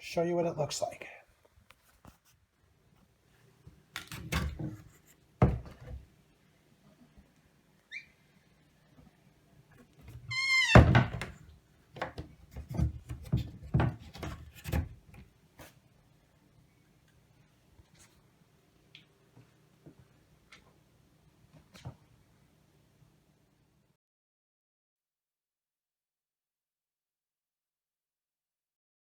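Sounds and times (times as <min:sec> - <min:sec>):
objects thunking and knocking: 0:04.0 - 0:06.1, 0:10.8 - 0:15.2
brief high squeak: 0:07.9 - 0:08.2.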